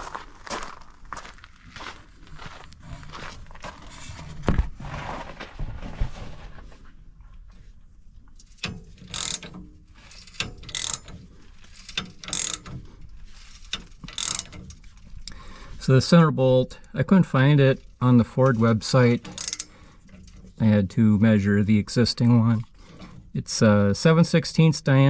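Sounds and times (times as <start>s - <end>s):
ratchet wrench clicking: 8.4s - 15.4s, 17.8s - 20.6s.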